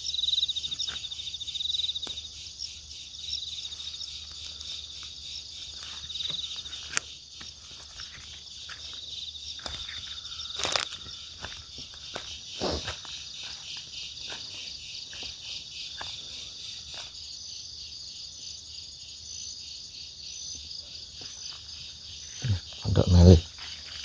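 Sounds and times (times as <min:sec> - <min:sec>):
insects trilling: 0:00.0 - 0:24.0
footsteps in undergrowth: 0:03.4 - 0:17.2, 0:21.1 - 0:24.0.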